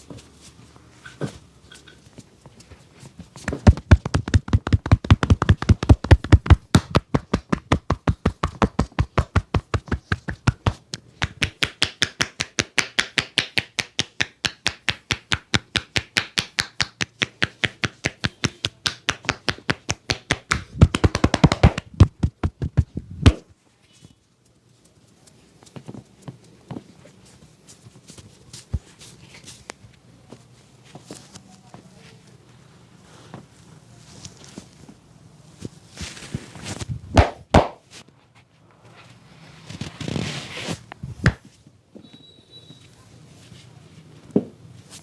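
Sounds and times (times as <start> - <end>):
hands striking in percussive massage: 3.4 - 23.5, 37.1 - 37.8.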